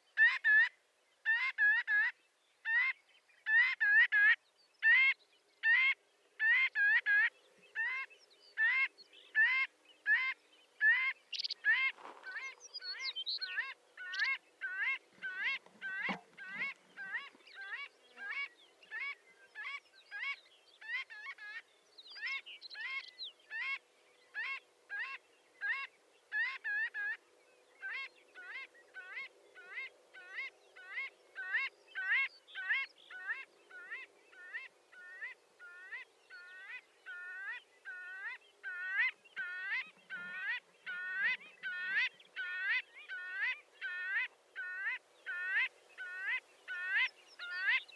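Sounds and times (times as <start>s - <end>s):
godwits calling: 5.7s - 21.6s, 27.8s - 47.9s.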